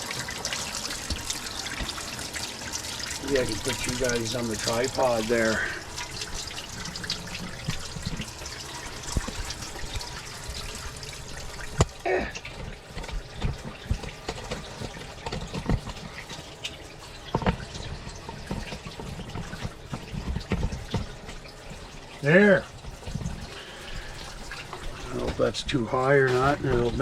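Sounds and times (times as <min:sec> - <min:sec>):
tap running into a sink: 0:00.0 - 0:16.5, 0:17.2 - 0:21.5.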